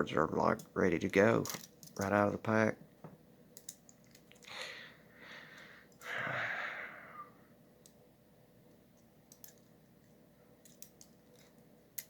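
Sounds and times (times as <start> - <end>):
person breathing: 4.4 - 7.6
person sighing: 4.5 - 7.4.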